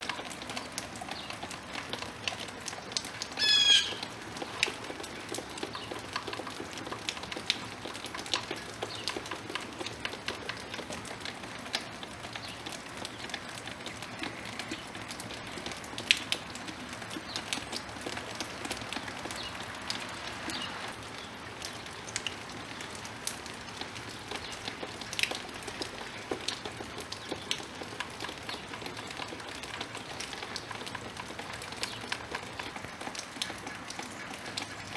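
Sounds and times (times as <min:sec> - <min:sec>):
bird harsh call: 0:03.4 - 0:04.0.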